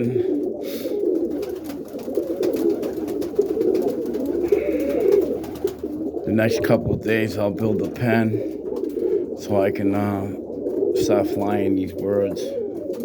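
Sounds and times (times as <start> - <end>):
pigeons cooing: 0.0 - 13.0.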